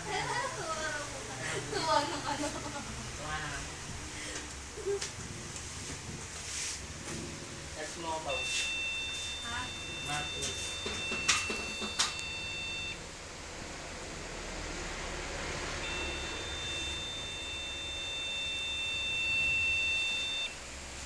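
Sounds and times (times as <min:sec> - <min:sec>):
computer high-pitched beep: 0:08.3 - 0:13.0, 0:15.8 - 0:20.5.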